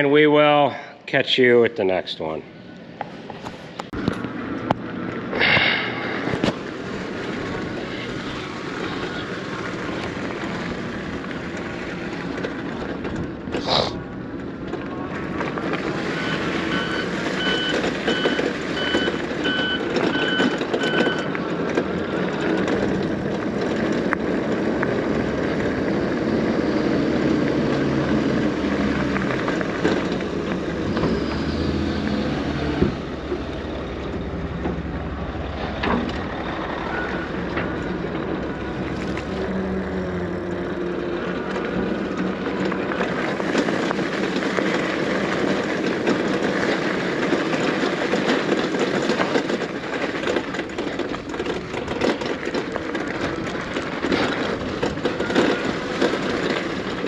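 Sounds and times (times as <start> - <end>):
vehicle rumble: 0.0 - 57.0
reversing alarm beeps: 16.2 - 21.3.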